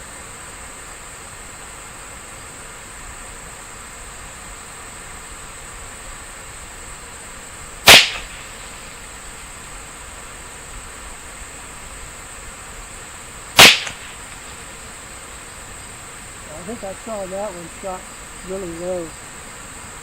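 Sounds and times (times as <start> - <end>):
rifle shots: 7.8 - 9.0, 13.6 - 14.7.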